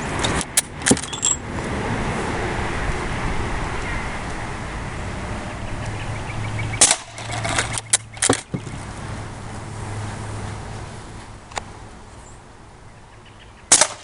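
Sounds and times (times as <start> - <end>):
air rifle shot: 13.7 - 14.0.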